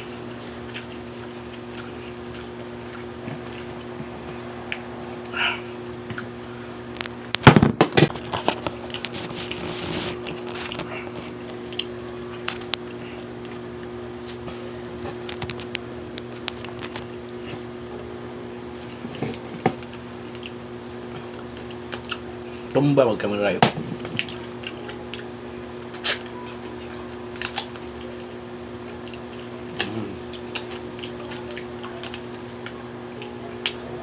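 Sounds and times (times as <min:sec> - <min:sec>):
steady low hum: 0:00.0 - 0:34.0
eating clicks and smacks: 0:19.1 - 0:22.3, 0:24.1 - 0:25.3, 0:29.0 - 0:33.8.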